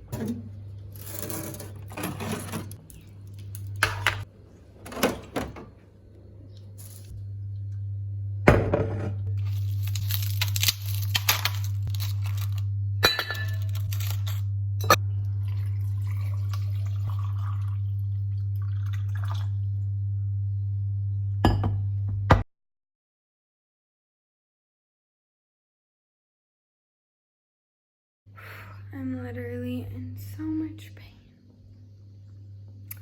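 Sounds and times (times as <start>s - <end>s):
steady low hum: 0.0s - 22.4s, 28.3s - 33.0s
glassware clinking: 13.0s - 15.0s
liquid pouring: 15.4s - 19.6s.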